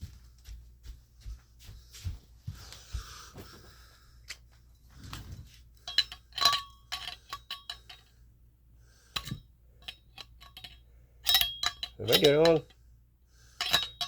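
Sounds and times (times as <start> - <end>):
short metallic ring: 5.8 - 8.1, 9.2 - 12.6, 13.6 - 14.0.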